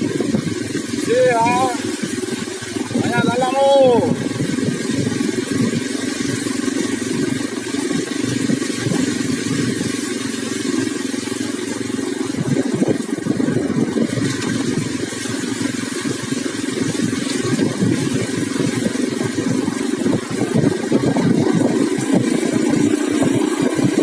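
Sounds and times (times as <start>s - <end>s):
vehicle engine running: 0.0s - 24.0s.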